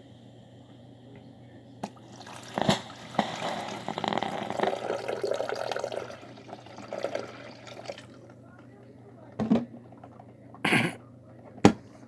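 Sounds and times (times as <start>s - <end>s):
liquid sputtering and dribbling: 1.8s - 8.4s.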